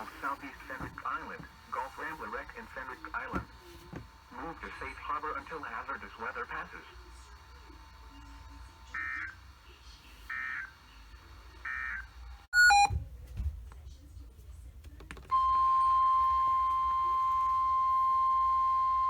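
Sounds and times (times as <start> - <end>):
steady warning alarm tone: 8.9 - 9.4, 10.3 - 10.8, 11.6 - 12.9, 15.3 - 19.0.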